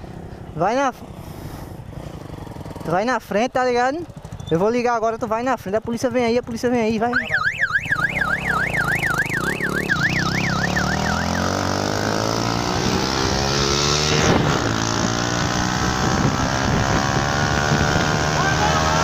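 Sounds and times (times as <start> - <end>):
motorcycle engine accelerating: 0.0 - 3.1, 4.0 - 4.8, 5.7 - 19.0
siren wailing rapidly: 7.1 - 12.5, 18.2 - 19.0.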